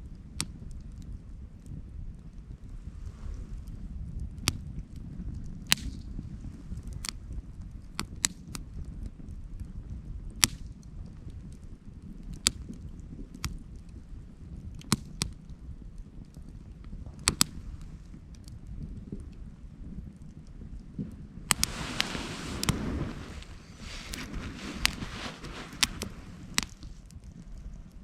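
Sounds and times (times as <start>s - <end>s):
wind rumble on microphone: 0.0s - 28.0s
campfire crackling: 2.4s - 19.4s, 20.2s - 28.0s
firewood snaps and pops: 5.7s - 6.1s, 10.4s - 10.8s, 14.7s - 15.4s, 17.2s - 17.9s, 25.8s - 26.9s.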